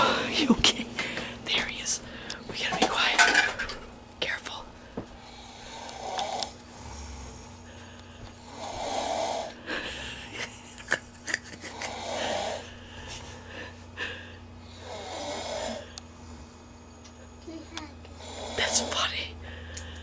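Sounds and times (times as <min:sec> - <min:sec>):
man snoring: 0:05.2 - 0:10.6, 0:11.7 - 0:13.7, 0:14.6 - 0:16.7, 0:18.2 - 0:19.1.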